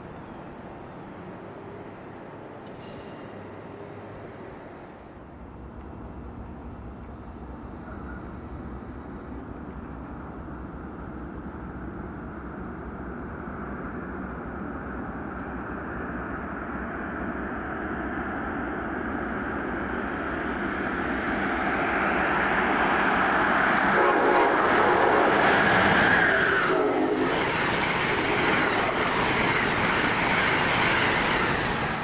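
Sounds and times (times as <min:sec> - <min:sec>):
train rail rumble: 0:00.0 - 0:32.0
train horn: 0:23.3 - 0:29.3.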